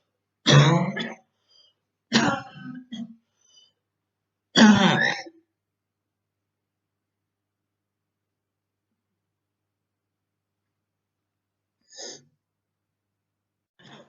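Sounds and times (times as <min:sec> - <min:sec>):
woman clearing throat: 0:00.5 - 0:01.3, 0:02.1 - 0:03.2, 0:04.6 - 0:05.4
woman coughing: 0:00.5 - 0:01.3, 0:02.1 - 0:03.2.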